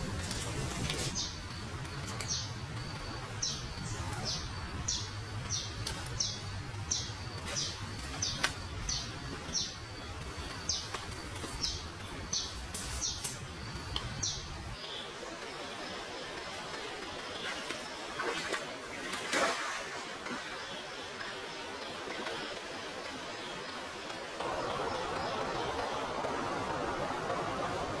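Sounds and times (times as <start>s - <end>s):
bird chirping: 1.0s - 15.2s.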